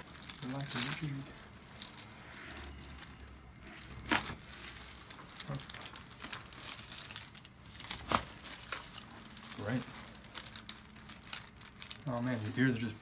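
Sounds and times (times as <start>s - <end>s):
paper sheet crinkling: 0.0s - 13.0s.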